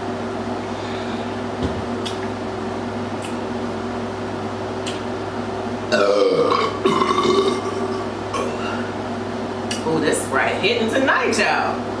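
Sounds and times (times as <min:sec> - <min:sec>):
steady background hum: 0:00.0 - 0:12.0
loud burps: 0:05.9 - 0:08.9.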